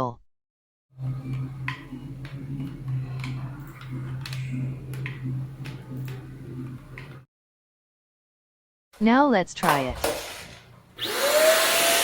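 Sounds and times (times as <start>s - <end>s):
steady low hum: 1.0s - 7.2s.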